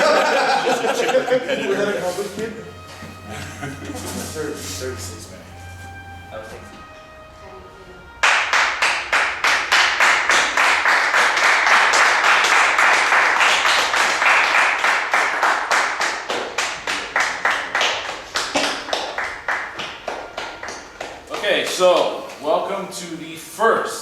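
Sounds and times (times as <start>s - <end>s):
group clapping in rhythm: 8.2s - 22.2s.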